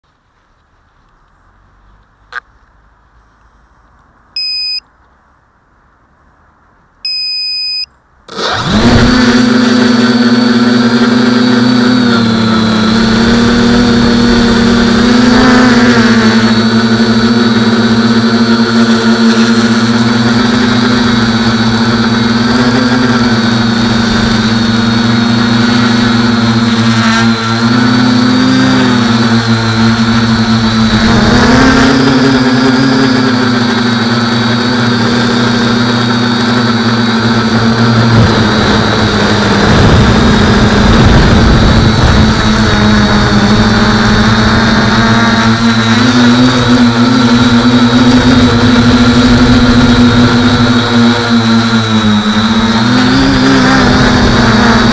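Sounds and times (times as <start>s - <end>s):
drone propellers buzzing: 7.1s - 54.9s
low rumbling rush: 35.4s - 54.9s.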